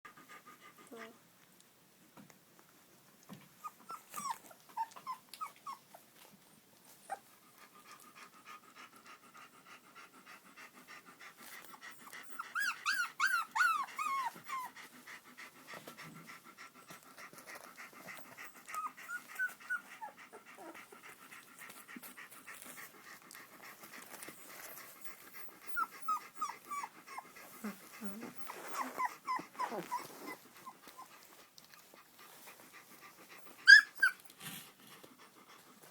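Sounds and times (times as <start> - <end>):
puppies whimpering: 3.8 - 5.9, 12.0 - 14.7, 24.0 - 31.2, 33.4 - 34.3.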